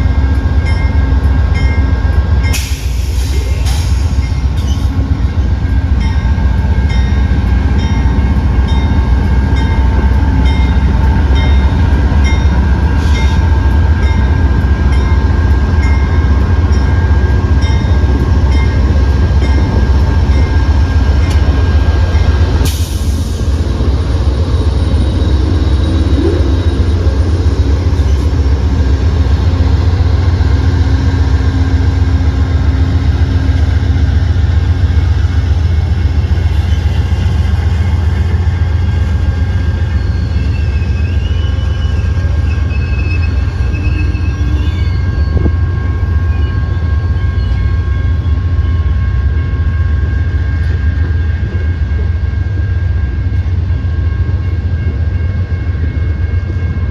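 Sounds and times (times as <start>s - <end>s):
train wheels rumbling on rails: 0.0s - 56.9s
wheel squeals: 39.3s - 48.4s.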